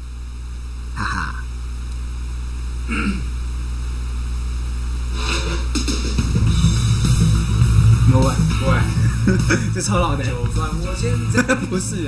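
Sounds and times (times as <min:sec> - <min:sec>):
sound system hum: 0:00.0 - 0:12.0
karaoke backing track: 0:05.2 - 0:12.0.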